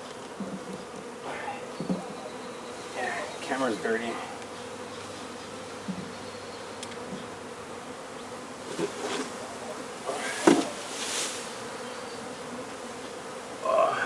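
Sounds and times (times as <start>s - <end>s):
bees buzzing: 0.0s - 14.0s
knocks and scrapes: 8.7s - 9.4s, 10.1s - 11.4s.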